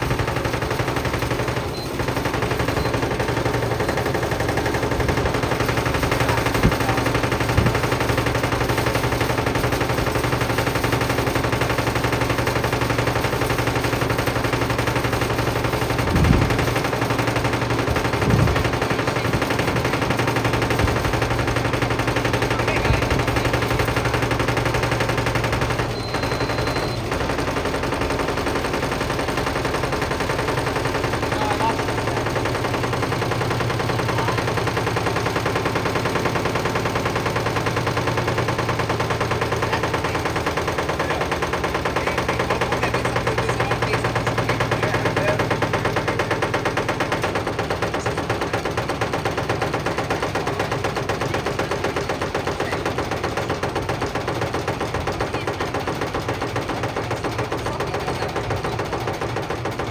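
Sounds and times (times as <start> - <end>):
bricks rattling in drum: 0.0 - 25.9
washing machine humming: 0.0 - 59.9.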